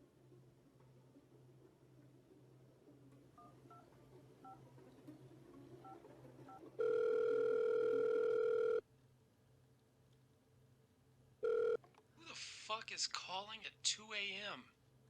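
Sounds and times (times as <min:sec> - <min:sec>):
telephone keypad beeps: 0:06.8 - 0:08.8
telephone ringing tone: 0:06.8 - 0:08.8, 0:11.4 - 0:11.8.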